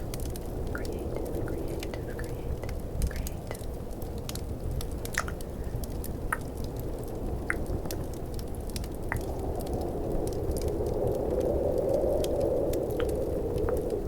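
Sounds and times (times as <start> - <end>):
fireplace crackle: 0.0 - 14.0
snowstorm wind: 0.0 - 14.0
tongue clicks: 0.7 - 3.7, 5.1 - 5.4, 6.3 - 6.5, 7.5 - 7.7.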